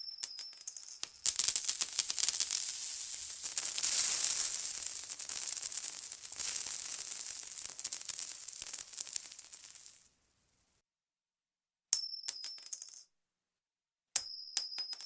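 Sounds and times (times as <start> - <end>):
coin bouncing and rattling on floor: 0.9 - 10.1.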